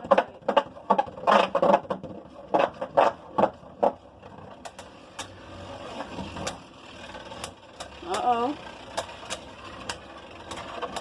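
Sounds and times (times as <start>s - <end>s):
plastic rattling and scraping: 0.0s - 8.0s.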